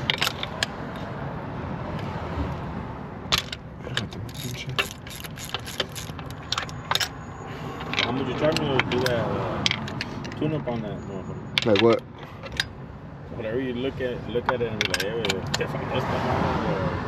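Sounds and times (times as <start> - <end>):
metallic tool clicks and clinks: 3.4 - 7.1.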